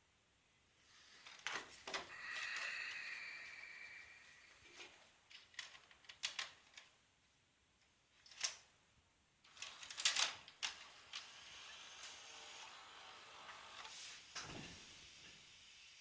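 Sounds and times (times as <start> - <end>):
faint steady hiss: 0.0 - 16.0
tape mechanism clicking and clacking: 9.5 - 11.4.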